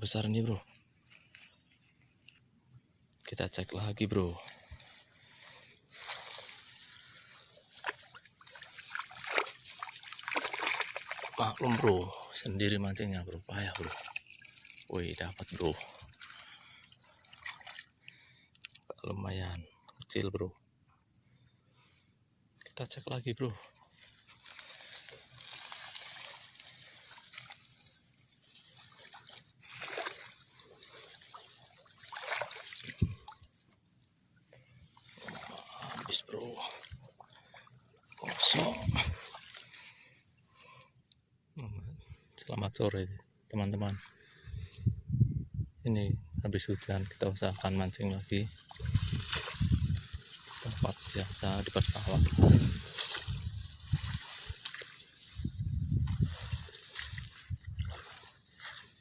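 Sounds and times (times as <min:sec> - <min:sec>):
shallow water splashing and trickling: 0:04.2 - 0:18.4, 0:23.9 - 0:40.7, 0:46.9 - 0:59.0.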